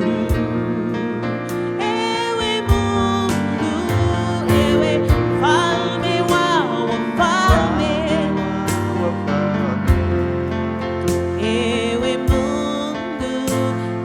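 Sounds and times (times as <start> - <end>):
person singing: 0.0 - 10.5, 11.2 - 14.0
bass: 0.0 - 14.0
keyboard: 0.0 - 14.0
steady drum beat: 2.7 - 5.6, 7.5 - 7.8, 9.9 - 10.2, 12.3 - 12.6.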